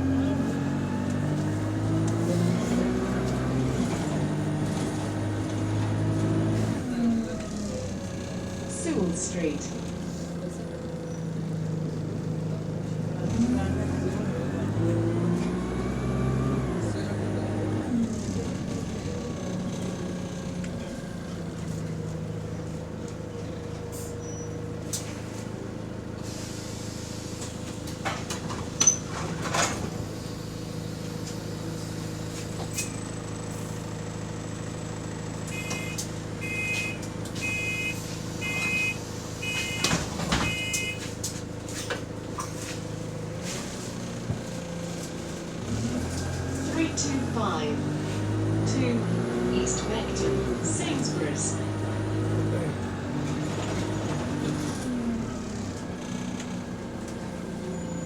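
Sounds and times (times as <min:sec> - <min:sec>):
diesel bus engine: 0:00.0 - 0:58.0
repeated warning beeps: 0:35.5 - 0:41.1.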